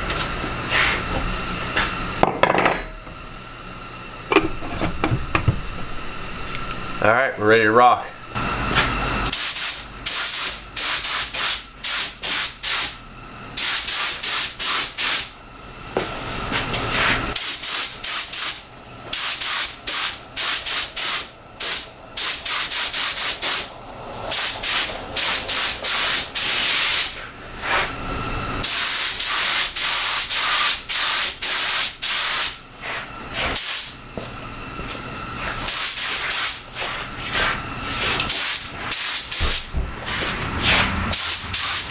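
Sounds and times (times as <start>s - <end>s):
paint spray gun hissing: 8.3s - 13.0s, 13.6s - 15.4s, 17.3s - 27.2s, 28.6s - 32.6s, 33.4s - 34.0s, 35.6s - 40.3s, 41.1s - 41.9s.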